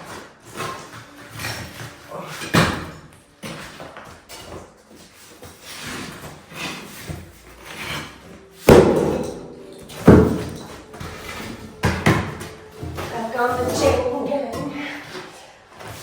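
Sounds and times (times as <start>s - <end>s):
blocks crashing into metal skip: 8.6s - 13.0s.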